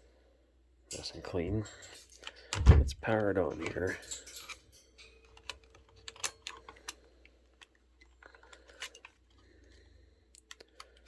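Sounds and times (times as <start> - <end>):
plastic clicks of camcorder handling: 5.2 - 7.0, 7.6 - 9.4.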